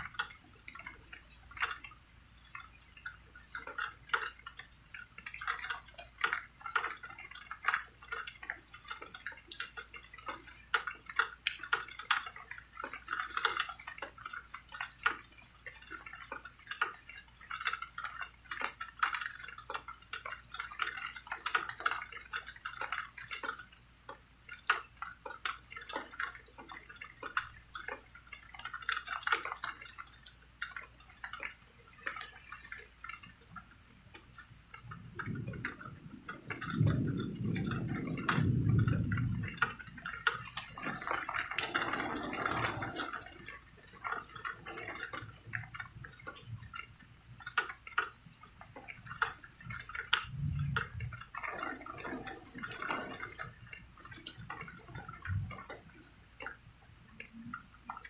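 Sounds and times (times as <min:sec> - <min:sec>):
rain drips and taps: 0:00.0 - 0:58.0.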